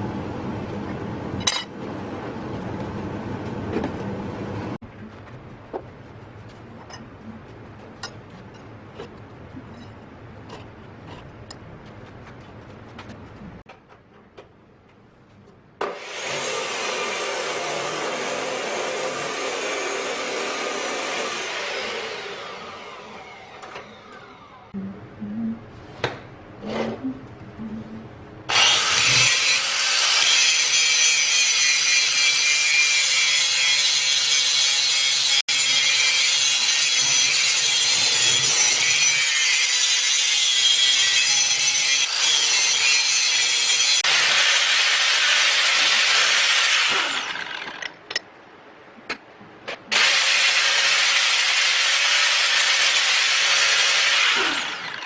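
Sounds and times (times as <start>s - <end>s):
power tool on steel: 15.8s - 24.7s, 28.5s - 47.9s, 49.9s - 55.0s.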